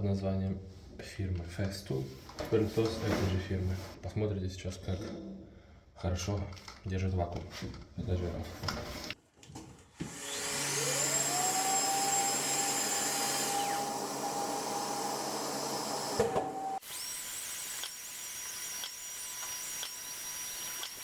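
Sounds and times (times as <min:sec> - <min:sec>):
sander motor whine: 0:10.1 - 0:17.1
dust extractor running: 0:10.2 - 0:16.8.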